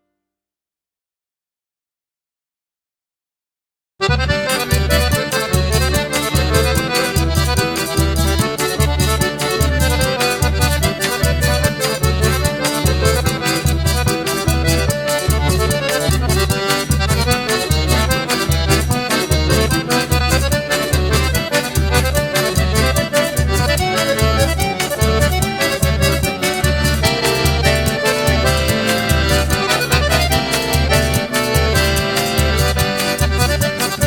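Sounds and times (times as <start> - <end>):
accordion melody: 4.0 - 34.0.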